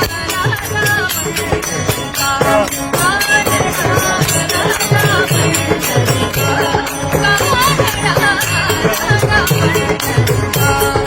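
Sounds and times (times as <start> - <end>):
jingling hand percussion: 0.0 - 11.0
person singing devotional song: 0.0 - 11.0.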